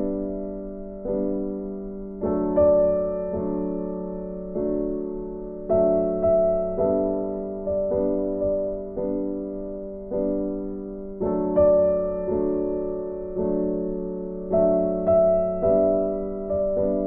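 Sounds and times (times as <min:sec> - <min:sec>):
soft piano chords: 0:00.0 - 0:17.0.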